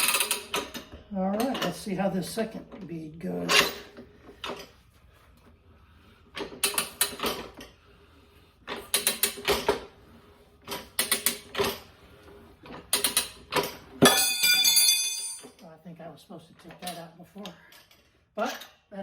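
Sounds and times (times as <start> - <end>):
tire changer clicking and creaking: 0.0 - 4.8, 6.2 - 8.0, 8.6 - 14.6
metallic ringing clang: 14.0 - 15.6.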